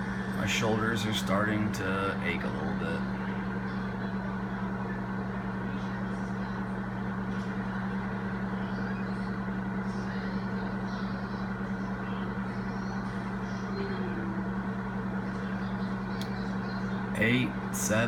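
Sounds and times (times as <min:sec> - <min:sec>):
microwave fan whirring: 0:00.0 - 0:18.0
microwave oven hum: 0:00.0 - 0:18.0.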